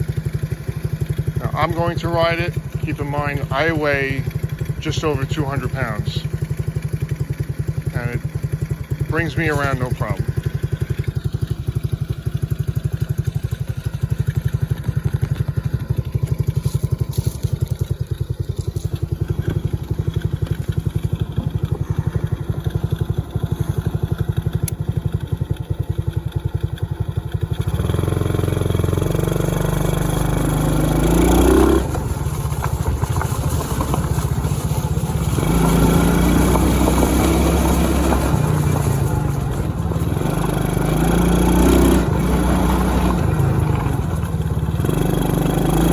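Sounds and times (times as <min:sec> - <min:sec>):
small atv engine idling and revving: 0:00.0 - 0:45.9.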